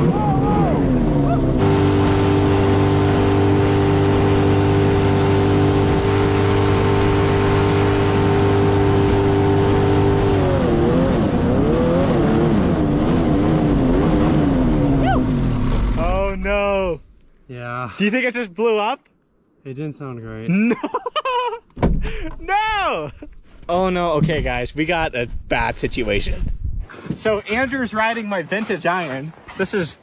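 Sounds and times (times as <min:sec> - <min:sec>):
two-stroke engine revving: 0:00.0 - 0:16.3.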